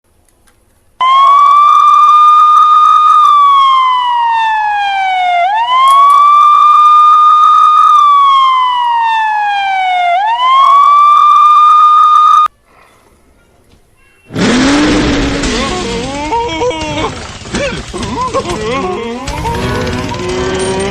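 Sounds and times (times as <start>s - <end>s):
wailing police siren: 1.0s - 12.5s.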